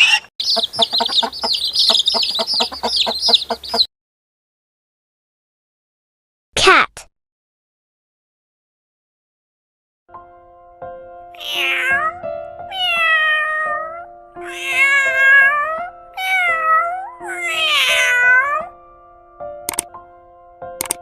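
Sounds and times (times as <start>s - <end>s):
cat meowing: 11.4s - 18.7s.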